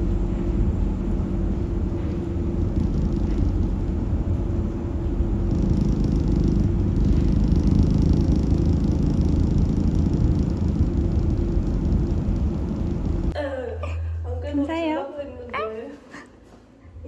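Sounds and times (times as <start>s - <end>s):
car driving rumble: 0.0s - 13.4s.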